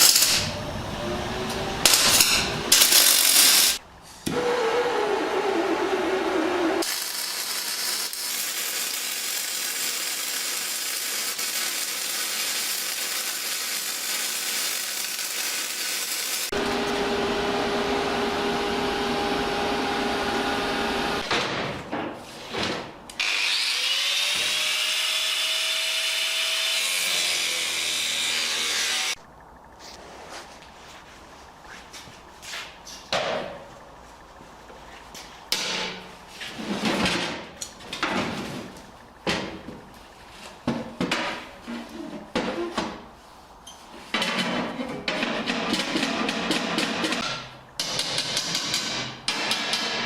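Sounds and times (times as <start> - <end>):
higher power tool whine: 16.2 - 21.2.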